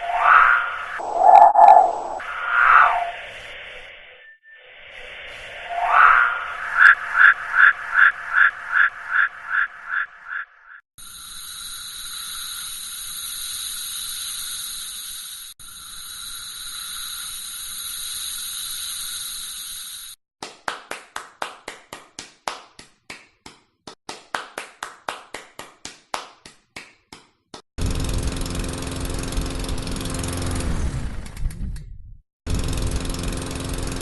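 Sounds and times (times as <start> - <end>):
air hissing out of a tyre: 11.0 - 20.2
hand clapping: 20.4 - 27.6.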